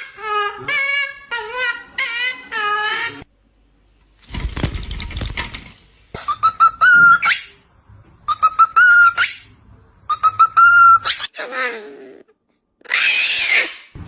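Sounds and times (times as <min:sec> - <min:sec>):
rustling noise: 0:03.9 - 0:06.1
parrot whistling: 0:06.2 - 0:07.6, 0:08.3 - 0:09.5, 0:10.1 - 0:11.3.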